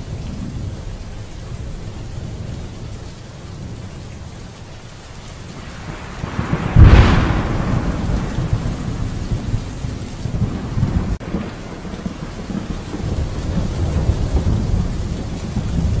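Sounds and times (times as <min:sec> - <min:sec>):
steady rain: 0:00.0 - 0:16.0
thunder clap and rumbling: 0:05.4 - 0:16.0.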